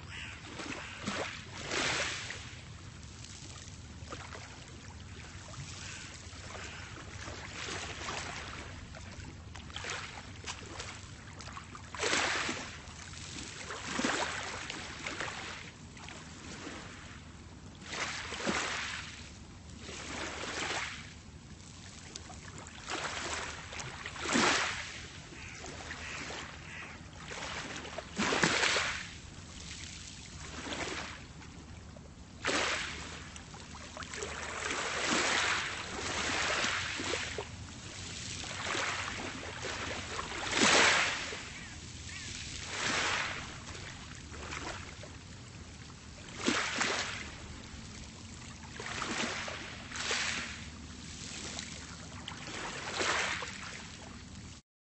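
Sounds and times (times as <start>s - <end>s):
waves washing onto pebbles: 0.2s - 2.6s, 12.0s - 15.6s, 24.2s - 25.0s, 25.9s - 31.2s, 32.4s - 33.3s, 34.2s - 44.8s, 46.3s - 47.3s, 48.8s - 51.8s.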